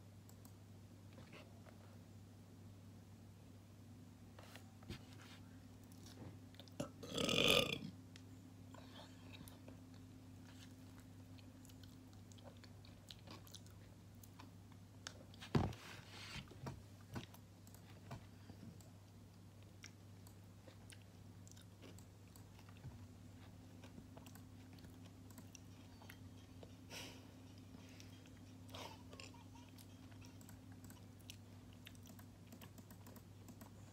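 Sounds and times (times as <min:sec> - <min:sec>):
low steady hum: 0:00.0 - 0:33.9
person burping: 0:06.8 - 0:08.0.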